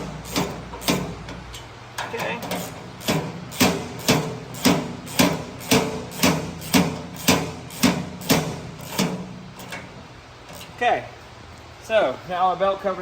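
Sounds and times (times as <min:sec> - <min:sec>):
metal being struck: 0:02.6 - 0:09.5.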